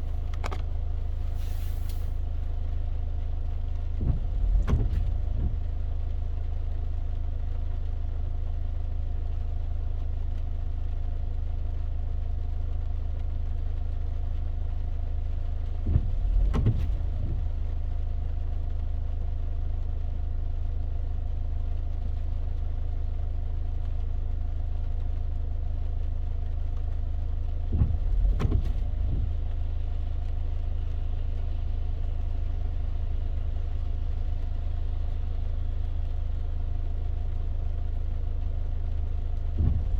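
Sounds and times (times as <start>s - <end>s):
faint rain hiss: 0.0s - 4.2s, 5.1s - 39.9s
engine and road hum: 0.0s - 39.9s
brief sweeping sound: 1.3s - 2.2s.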